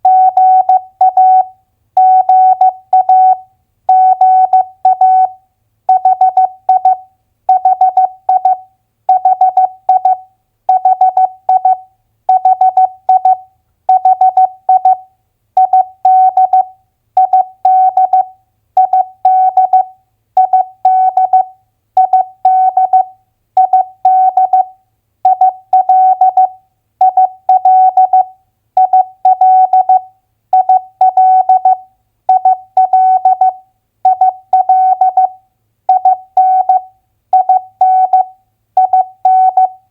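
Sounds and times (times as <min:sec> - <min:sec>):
morse code tone: 0:37.4 - 0:39.8.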